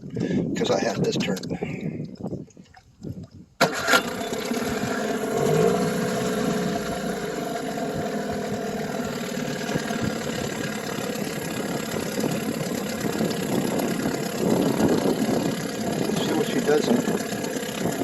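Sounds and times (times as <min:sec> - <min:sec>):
outboard motor idling: 0:03.6 - 0:18.0.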